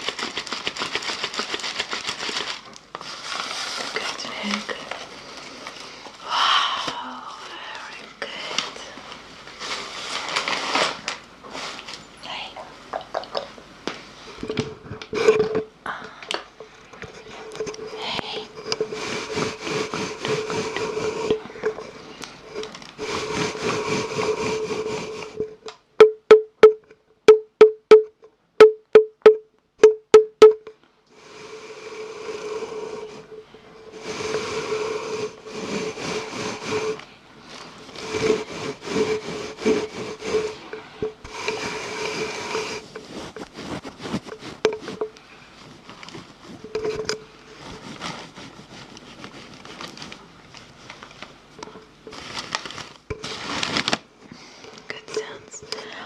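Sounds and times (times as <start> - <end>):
rustling hissing mouth noise: 17.2 - 21.4, 31.2 - 37.0, 38.0 - 45.2.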